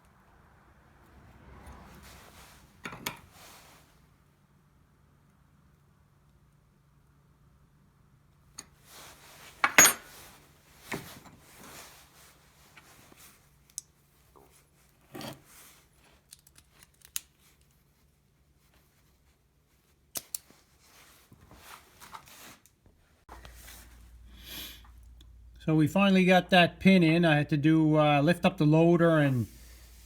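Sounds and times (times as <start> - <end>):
metal tools clinking and scraping: 2.8 - 3.3, 8.6 - 11.9.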